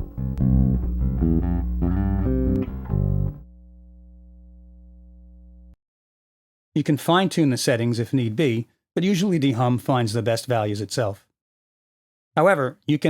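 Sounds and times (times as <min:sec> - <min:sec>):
electric bass plucked notes: 0:00.0 - 0:05.8.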